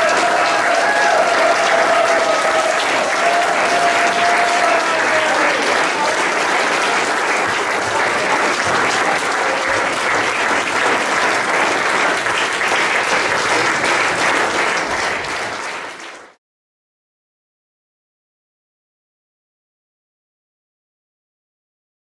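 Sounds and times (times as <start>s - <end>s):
audience applauding: 0.0s - 16.4s.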